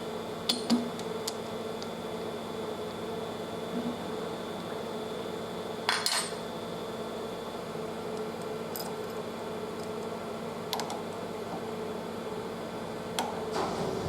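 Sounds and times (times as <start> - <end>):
machinery humming: 13.5 - 14.0.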